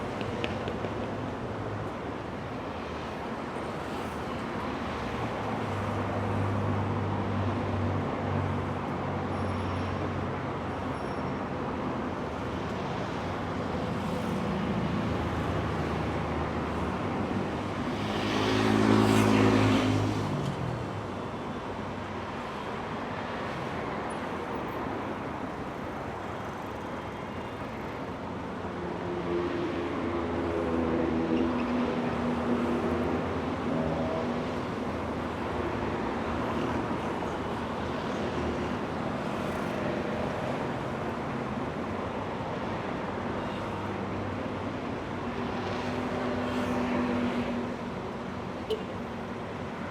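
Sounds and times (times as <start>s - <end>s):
passing cars: 12.8s - 49.9s.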